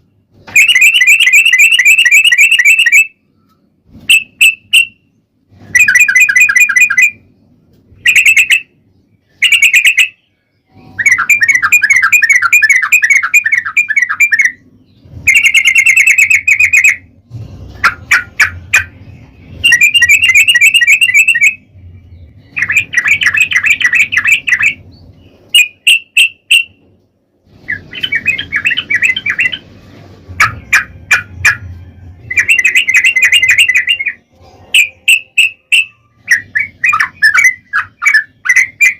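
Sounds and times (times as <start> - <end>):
bulbul singing trilled notes: 32.2 - 38.9.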